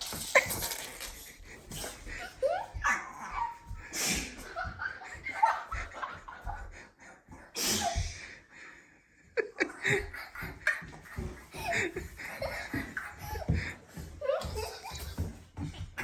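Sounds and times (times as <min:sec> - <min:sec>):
people laughing: 0:01.8 - 0:08.2, 0:09.2 - 0:15.8.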